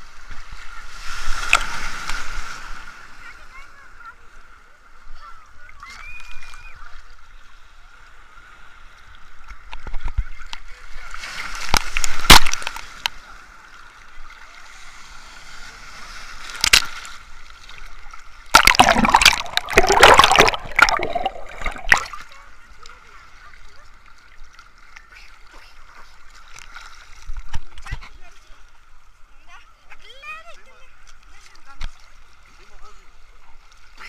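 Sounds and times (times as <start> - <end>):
waves breaking on shore: 14.3 - 24.0.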